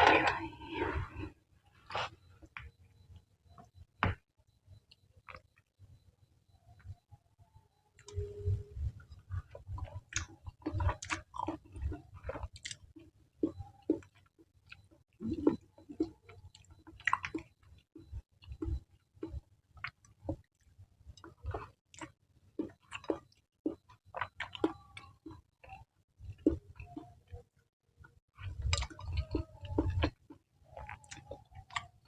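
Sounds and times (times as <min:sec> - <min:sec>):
wet chewing of noodles: 0:09.0 - 0:27.6, 0:28.2 - 0:32.0.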